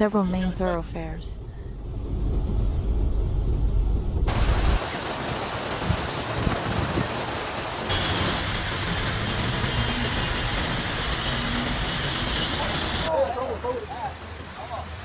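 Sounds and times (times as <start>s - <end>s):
deep low rumble: 0.2s - 4.8s
heavy rain hissing: 4.3s - 15.0s.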